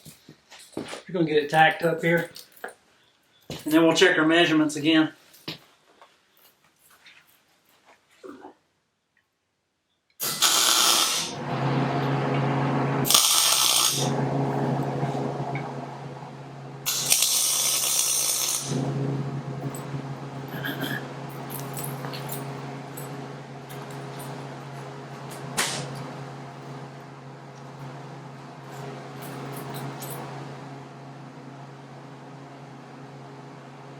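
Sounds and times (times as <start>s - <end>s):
welder crackling hiss: 10.2s - 11.4s, 13.0s - 14.1s, 16.8s - 19.0s, 20.4s - 26.8s
steady electrical hum: 10.2s - 33.9s.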